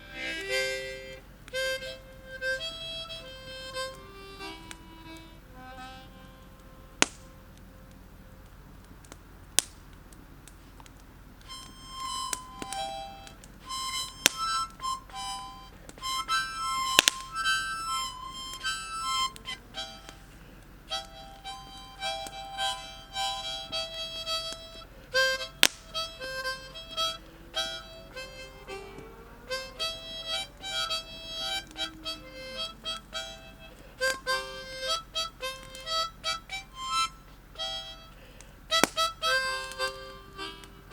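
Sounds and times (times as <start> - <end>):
harmonica melody: 0.0 - 8.5, 11.4 - 40.9
sharp pops: 7.0 - 7.4, 8.8 - 22.8, 25.3 - 29.1, 38.7 - 40.0.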